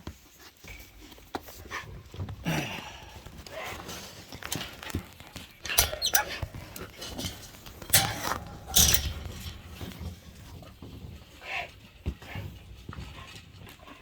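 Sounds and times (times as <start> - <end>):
sharp knocks and clanks: 4.4 - 12.3.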